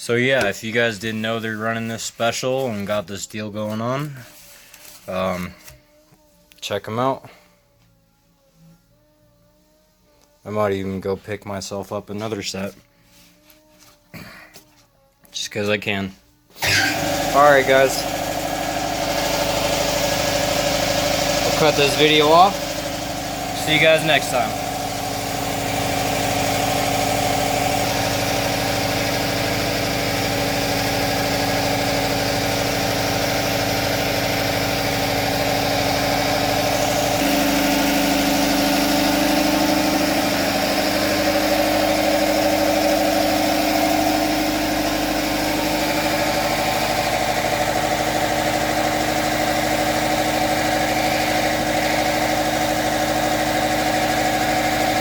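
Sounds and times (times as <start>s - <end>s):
engine idling: 16.6s - 55.0s.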